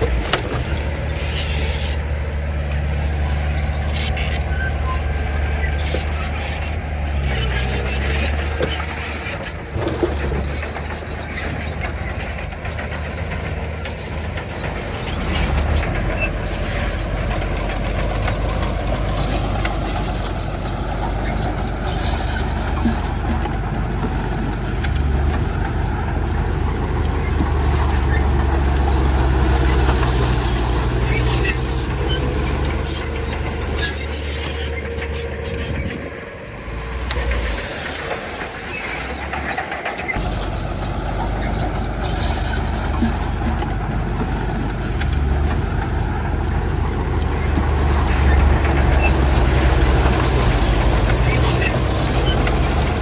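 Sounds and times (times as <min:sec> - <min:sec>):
bulldozer diesel engine running: 0:00.0 - 0:53.0
steel tracks squealing and clanking: 0:00.0 - 0:53.0.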